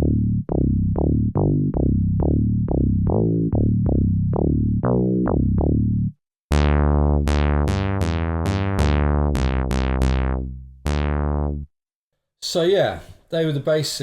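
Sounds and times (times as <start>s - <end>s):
bright zappy synth bass: 0.0s - 11.7s
synthesizer bass line: 0.0s - 11.7s.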